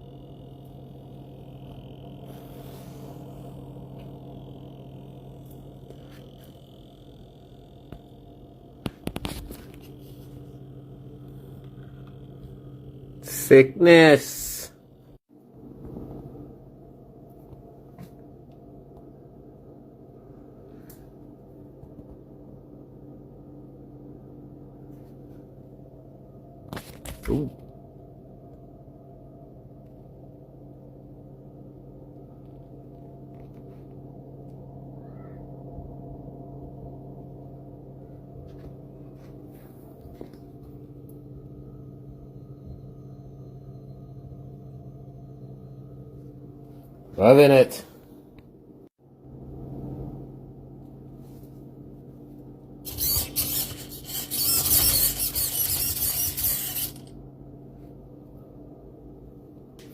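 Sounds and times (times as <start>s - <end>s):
small electric motor humming: 0.0s - 13.3s, 52.8s - 57.2s
low motor hum: 0.0s - 13.8s, 14.7s - 47.3s, 48.0s - 59.9s.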